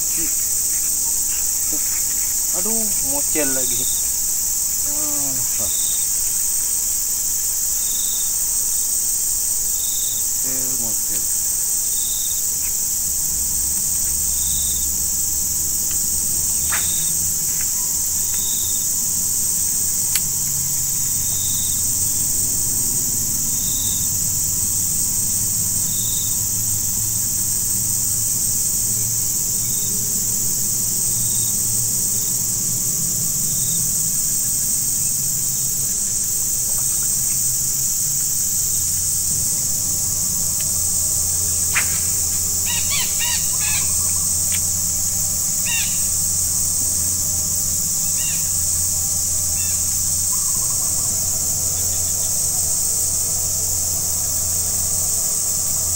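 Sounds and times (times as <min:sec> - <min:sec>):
bird calls: 0:00.0 - 0:04.2, 0:41.7 - 0:44.3
high-pitched insect chorus: 0:00.0 - 0:55.9
short insect chirp: 0:00.0 - 0:55.9.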